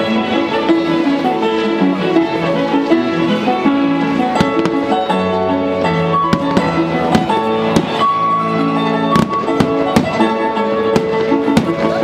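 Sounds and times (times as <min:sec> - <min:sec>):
loud music with held notes: 0:00.0 - 0:12.0
firework bangs: 0:04.3 - 0:12.0.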